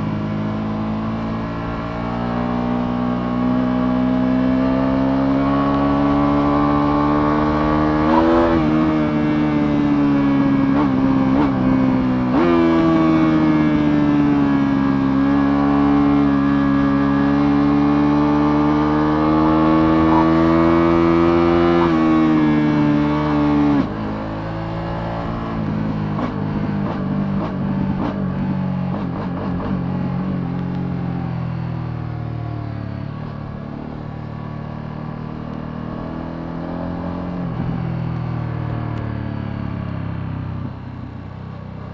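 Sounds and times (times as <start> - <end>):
motorcycle engine pulling: 7.4 - 9.3.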